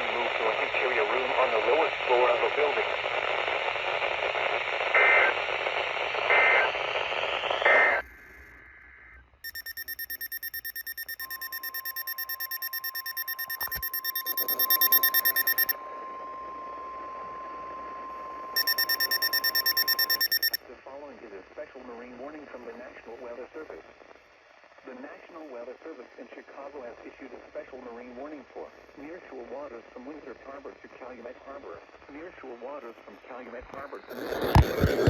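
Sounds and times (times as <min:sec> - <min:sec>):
radio static: 0:00.0 - 0:08.0, 0:11.3 - 0:15.7, 0:33.6 - 0:35.0
short data bursts: 0:09.4 - 0:15.8, 0:18.3 - 0:20.6
pulsing alarm beep: 0:09.4 - 0:17.4, 0:18.1 - 0:20.6
steady warning tone: 0:09.4 - 0:20.6.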